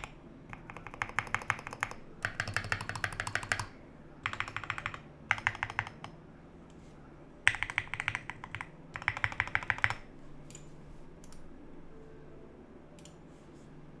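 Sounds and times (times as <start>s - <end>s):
mechanical keyboard typing: 0.0s - 6.2s, 7.4s - 10.6s.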